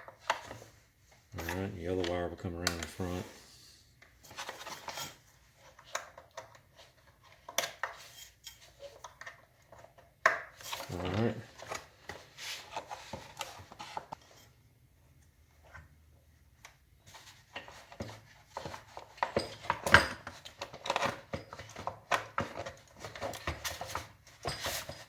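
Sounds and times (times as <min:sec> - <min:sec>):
hands clicking and tapping wiring: 0:01.3 - 0:03.1.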